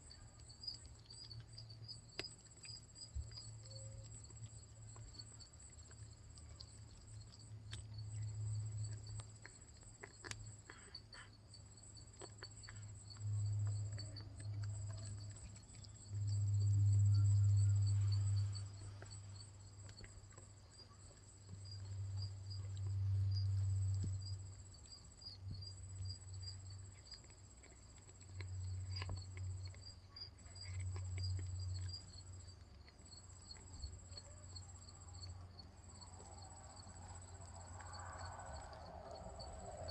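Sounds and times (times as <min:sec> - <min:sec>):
cat chewing claws: 0:00.0 - 0:39.9
crickets chirping: 0:00.0 - 0:39.9.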